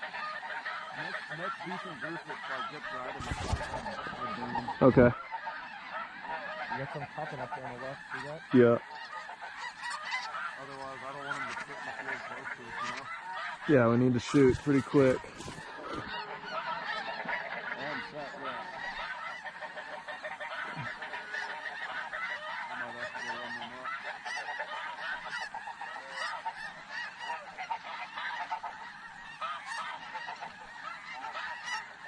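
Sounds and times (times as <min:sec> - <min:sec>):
flock of geese honking: 0:00.0 - 0:32.0.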